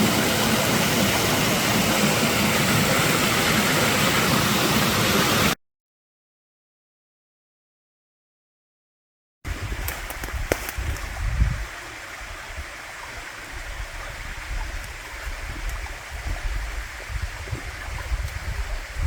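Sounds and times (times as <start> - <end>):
flowing water rushing: 0.0 - 5.6, 9.5 - 19.0.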